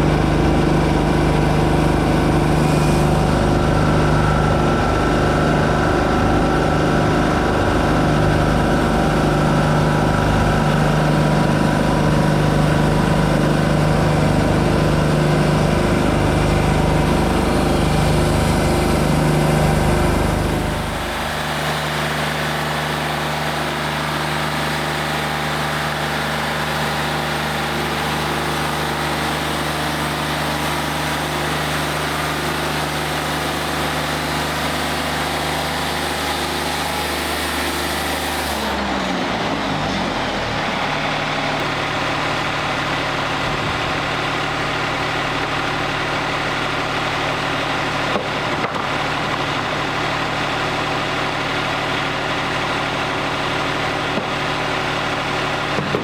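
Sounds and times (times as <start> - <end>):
bandsaw sawmill running: 0.0 - 56.0
sharp knocks: 55.8 - 56.0.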